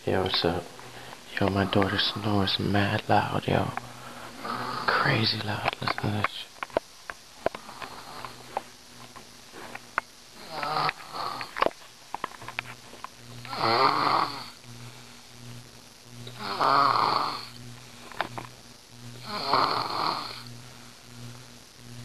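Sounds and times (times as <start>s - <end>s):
girl snoring loudly: 4.4s - 5.0s, 7.6s - 8.3s, 10.4s - 11.5s, 13.5s - 14.6s, 16.3s - 17.6s, 19.2s - 20.4s.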